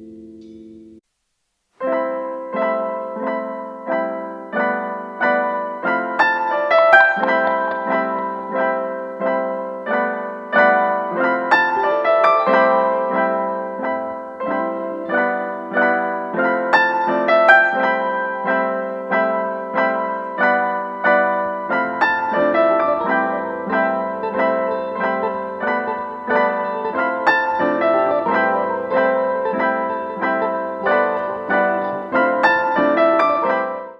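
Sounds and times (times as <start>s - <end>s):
gentle piano music: 1.8s - 33.9s.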